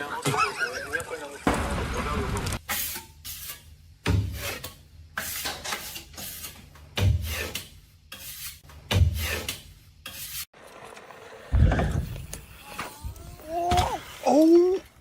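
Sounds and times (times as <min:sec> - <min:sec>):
rough scraping strokes: 0:02.7 - 0:10.5.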